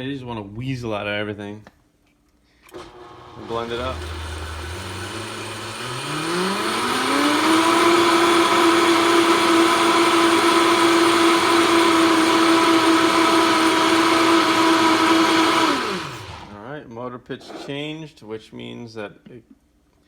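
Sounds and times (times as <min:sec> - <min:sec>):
blender motor running: 0:02.7 - 0:16.6.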